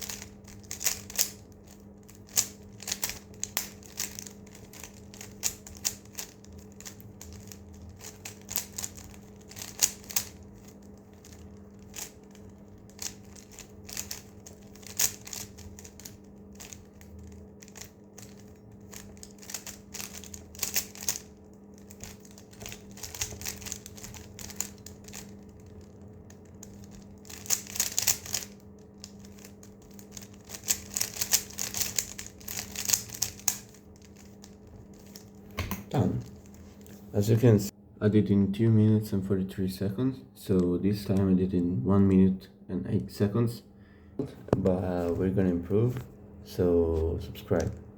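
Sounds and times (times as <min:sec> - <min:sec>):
puzzle cube plastic clicks: 0:00.0 - 0:35.3.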